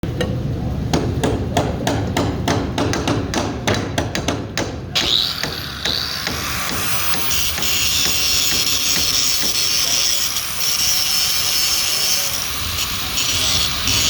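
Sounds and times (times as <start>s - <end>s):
rapid hammer blows: 0.9s - 11.1s.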